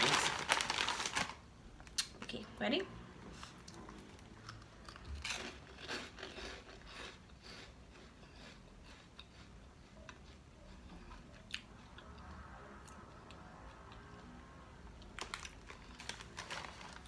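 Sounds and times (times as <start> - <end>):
person crunching snack: 4.5 - 9.4.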